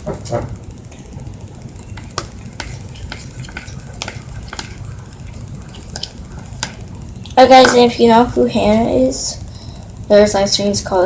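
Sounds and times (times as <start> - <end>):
steady low hum: 0.0 - 11.0
utensil tapping in a bowl: 1.9 - 6.9.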